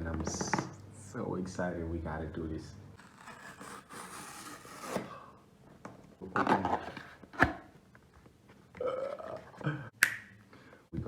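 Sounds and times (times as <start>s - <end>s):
handling rustling and scraping: 6.2s - 7.6s.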